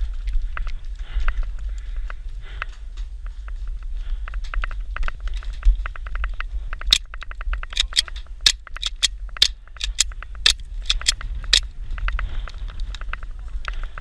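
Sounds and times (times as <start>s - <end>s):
sharp cracks: 4.3s - 13.9s
airsoft gunfire clicking shots: 6.8s - 11.6s.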